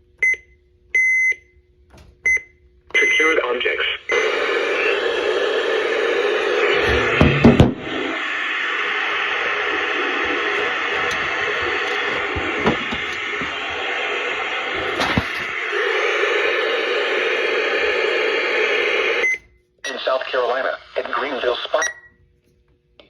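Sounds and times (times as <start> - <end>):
radio static hiss: 3.0 - 19.2, 19.9 - 21.9.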